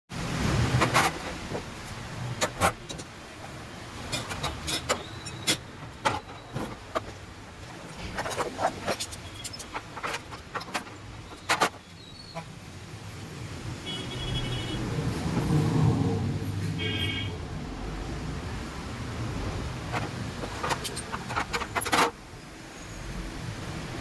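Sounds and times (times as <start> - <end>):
metal parts and tools clicking: 0.7 - 12.4, 19.9 - 22.2.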